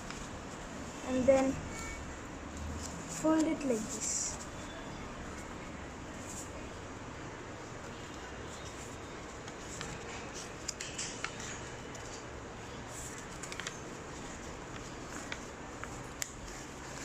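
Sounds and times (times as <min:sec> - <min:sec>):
paper folding and crinkling: 0:00.0 - 0:04.7, 0:07.6 - 0:17.0
steady background hiss: 0:00.0 - 0:17.0.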